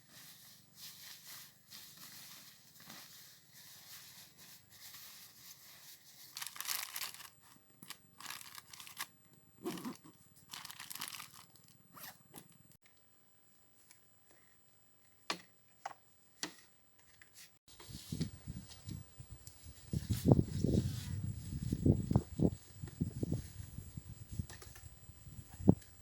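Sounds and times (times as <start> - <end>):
rustling and crinkling: 0.0 - 12.8.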